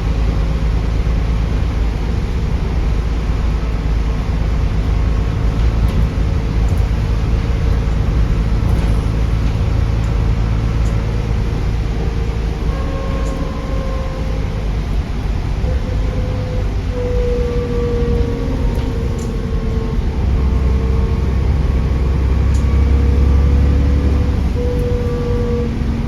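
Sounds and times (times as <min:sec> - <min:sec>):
bus diesel engine rumble: 0:00.0 - 0:26.0
turbo whistle: 0:12.0 - 0:15.0, 0:15.6 - 0:21.1, 0:23.7 - 0:25.9.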